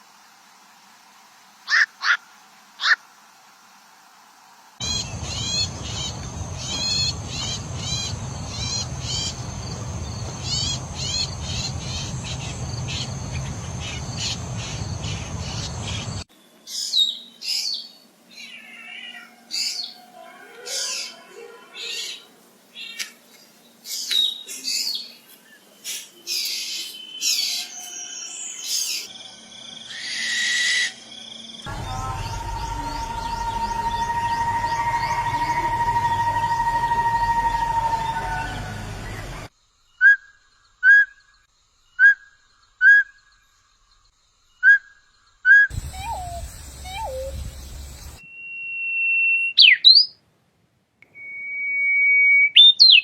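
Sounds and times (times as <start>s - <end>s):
steady rushing background: 4.8s - 16.2s
birds chirping: 4.8s - 30.3s, 31.0s - 39.5s, 45.7s - 48.3s
bird calls and whistles: 44.6s - 50.2s, 51.2s - 53.0s.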